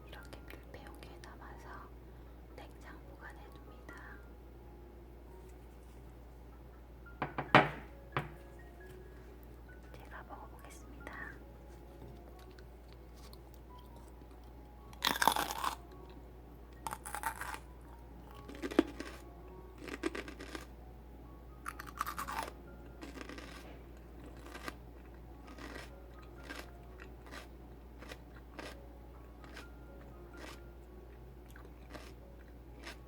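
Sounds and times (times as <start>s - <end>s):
celery being bitten and chewed: 11.7s - 20.7s, 21.6s - 33.0s.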